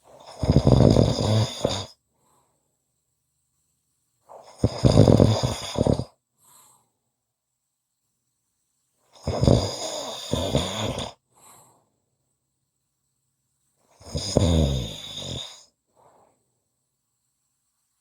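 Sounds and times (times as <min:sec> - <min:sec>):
person snoring: 0:00.1 - 0:01.9, 0:04.3 - 0:06.1, 0:09.2 - 0:11.2, 0:14.0 - 0:15.7
faint short breath: 0:06.4 - 0:07.0, 0:11.3 - 0:12.0.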